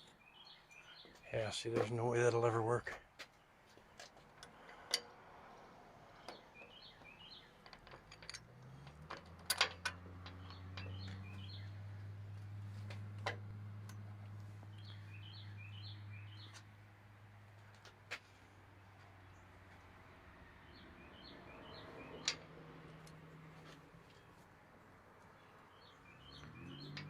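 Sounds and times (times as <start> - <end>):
small birds chirping: 0.0 - 9.1, 9.8 - 27.0
sharp clicks and knocks: 6.2 - 11.4.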